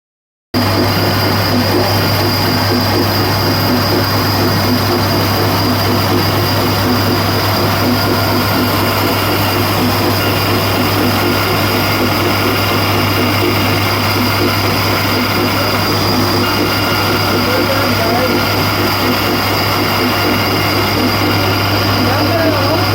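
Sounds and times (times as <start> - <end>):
band saw humming and whining: 0.6 - 22.9.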